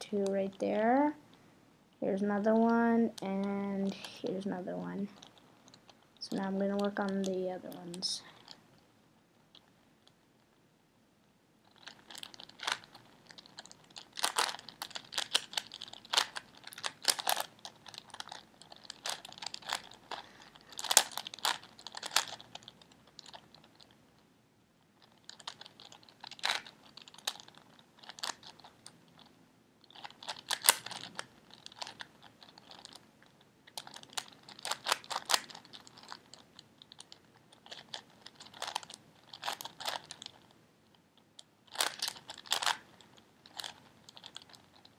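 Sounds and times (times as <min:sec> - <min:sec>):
puzzle cube layers clicking: 0:02.5 - 0:08.6, 0:11.7 - 0:24.0, 0:25.0 - 0:29.3, 0:29.9 - 0:33.0, 0:33.7 - 0:40.5, 0:41.7 - 0:44.9.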